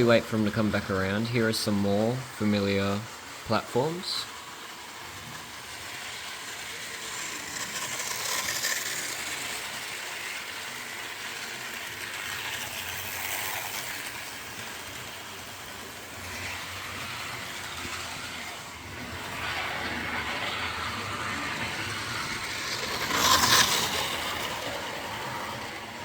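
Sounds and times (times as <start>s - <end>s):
wheels rattling on track: 0.0s - 26.0s
whirr of small electric motors: 1.7s - 26.0s.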